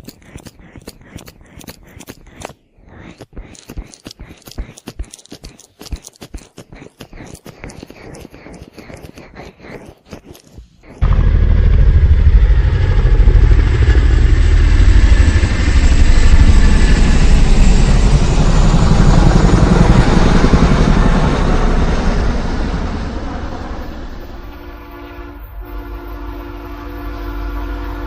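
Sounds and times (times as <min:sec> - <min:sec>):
motorcycle engine running: 0:11.0 - 0:22.2.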